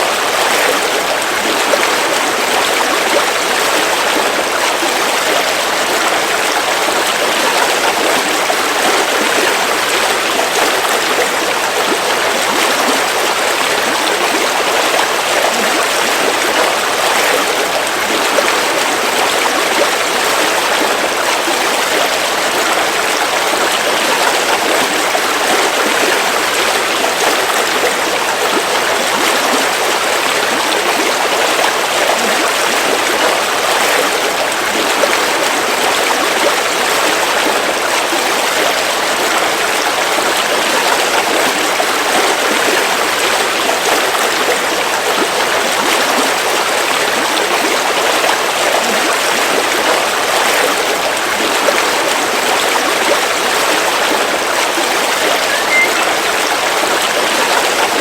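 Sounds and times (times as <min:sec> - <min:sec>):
river rushing over rocks: 0:52.4 - 0:58.0.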